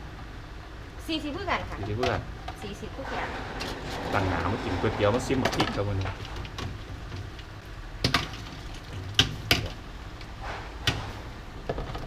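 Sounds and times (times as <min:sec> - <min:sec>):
low steady hum: 0:00.0 - 0:12.0
kitchenware clicks and knocks: 0:01.7 - 0:03.8.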